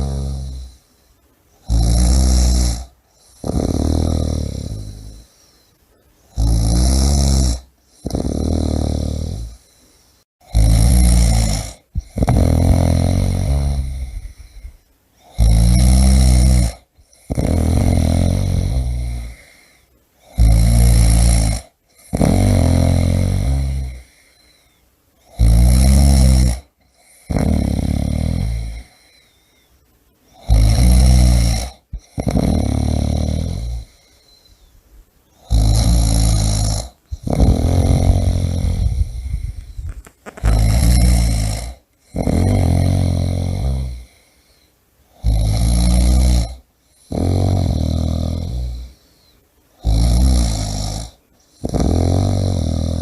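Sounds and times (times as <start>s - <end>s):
person snoring loudly: 0.0s - 0.8s, 1.6s - 5.4s, 6.3s - 9.6s, 10.4s - 24.5s, 25.2s - 29.2s, 30.3s - 34.4s, 35.4s - 44.3s, 45.1s - 49.0s, 49.8s - 53.0s.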